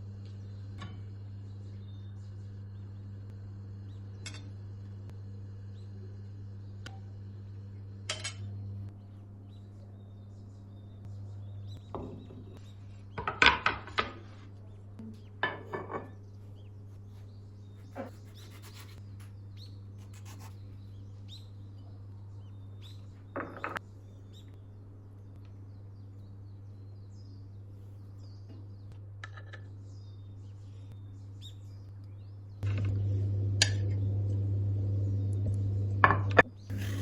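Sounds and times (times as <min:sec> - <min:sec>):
steady low hum: 0:00.0 - 0:13.2, 0:29.9 - 0:37.0.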